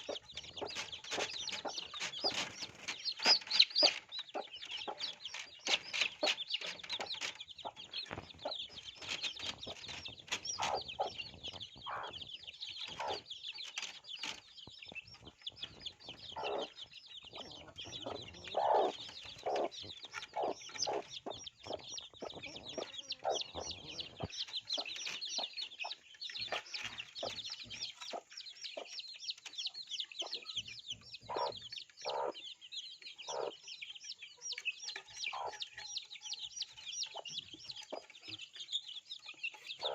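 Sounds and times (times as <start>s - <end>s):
low clucks: 0.0s - 29.6s
baby chicks peeping: 0.0s - 39.9s.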